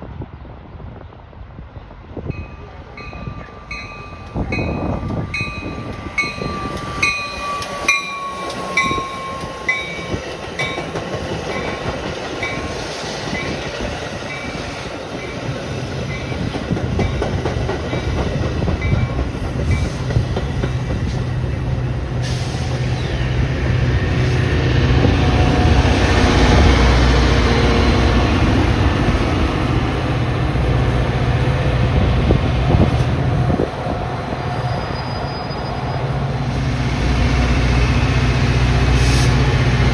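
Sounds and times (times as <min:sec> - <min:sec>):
locomotive engine rumble: 0:01.6 - 0:39.9
wheels rattling on rails: 0:01.8 - 0:39.9
train bell dinging: 0:02.3 - 0:21.2.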